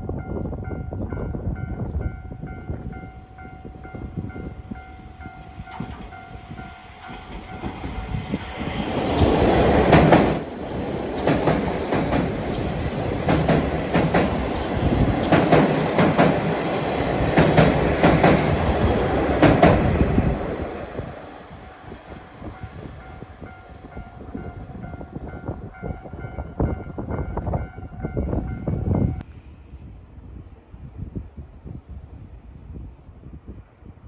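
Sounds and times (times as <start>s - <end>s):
train passing: 0.0s - 29.5s
train wheels clicking over rail joints: 7.0s - 20.3s.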